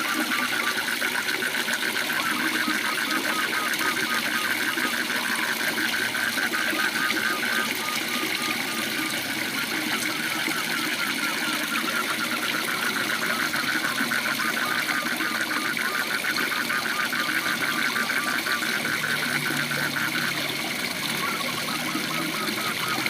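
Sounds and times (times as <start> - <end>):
frog trilling: 0.0 - 23.0
waterfall rushing: 3.0 - 12.6.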